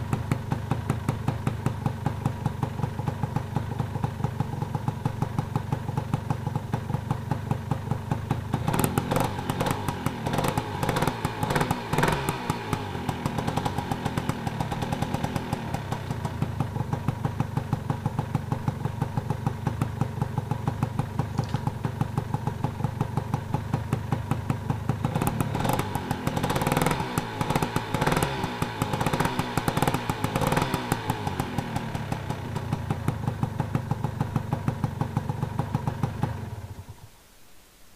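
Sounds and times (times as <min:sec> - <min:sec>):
motorcycle engine idling: 0:00.0 - 0:37.1
engine throttle blips: 0:08.6 - 0:16.6.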